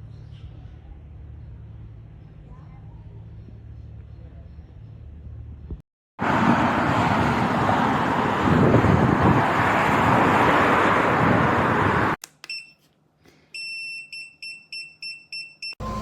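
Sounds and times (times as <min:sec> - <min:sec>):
scooter short high beeps: 0:12.4 - 0:12.8, 0:13.6 - 0:16.0.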